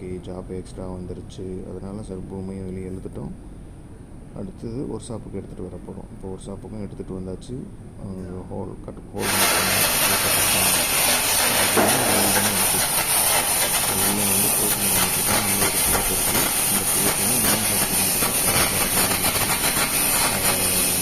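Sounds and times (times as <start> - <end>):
loud steady hissing: 9.2 - 21.0.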